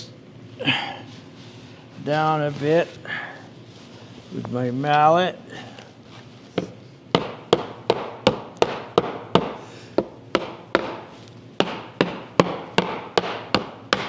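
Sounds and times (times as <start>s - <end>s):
mallet knocking on metal: 7.2s - 14.0s.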